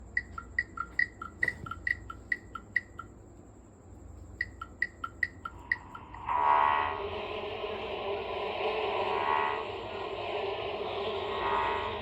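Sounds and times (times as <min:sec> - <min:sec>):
high two-note chirps: 0:00.2 - 0:03.1, 0:04.4 - 0:06.0
buzzy sustained tone: 0:06.0 - 0:12.0.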